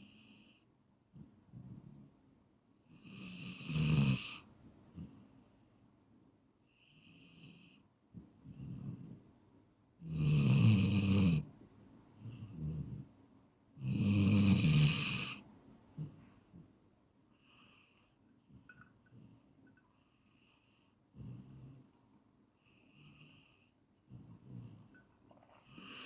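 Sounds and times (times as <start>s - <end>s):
quiet breathing: 0.0s - 9.6s, 11.4s - 13.5s, 14.8s - 26.0s
person snoring: 13.8s - 15.4s.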